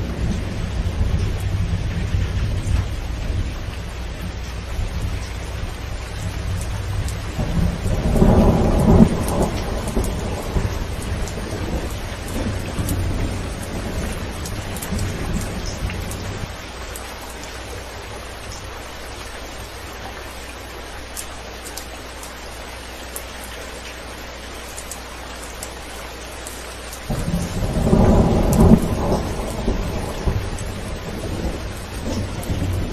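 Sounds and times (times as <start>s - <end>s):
thunder rumbling: 0.0s - 16.8s, 27.1s - 32.9s
rain on a metal roof: 0.0s - 32.9s.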